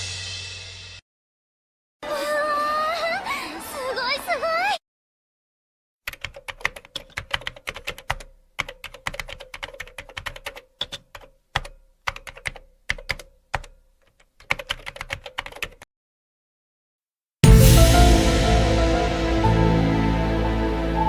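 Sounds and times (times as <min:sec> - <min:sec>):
typing on a keyboard: 0:06.1 - 0:15.9.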